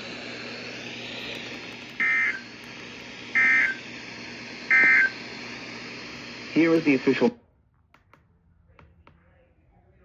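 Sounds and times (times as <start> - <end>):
radio hiss: 0.0 - 7.4.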